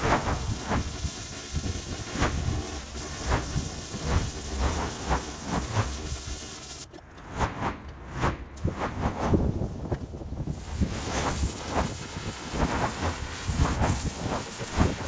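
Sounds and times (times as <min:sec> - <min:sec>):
pressure washer spray hissing: 0:00.0 - 0:06.9, 0:10.5 - 0:15.0.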